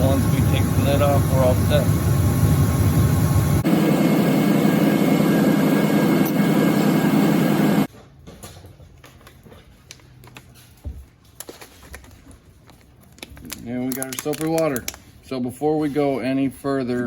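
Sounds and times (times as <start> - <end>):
truck engine running: 0.0 - 7.9.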